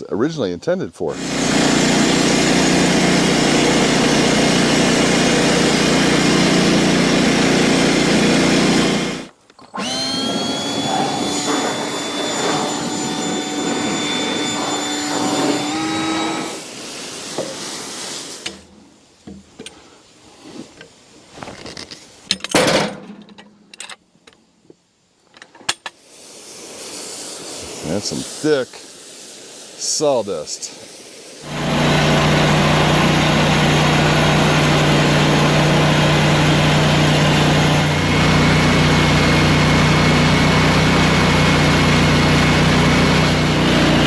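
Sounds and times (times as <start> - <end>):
band sawmill cutting a log: 1.1 - 18.7, 26.0 - 44.0
sawmill whine: 1.1 - 18.7, 31.3 - 44.0.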